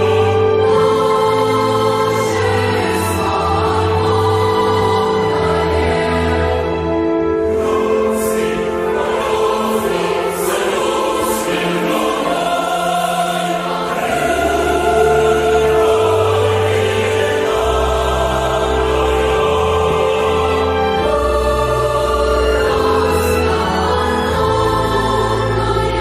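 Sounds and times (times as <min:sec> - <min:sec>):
choir singing held chords: 0:00.0 - 0:26.0.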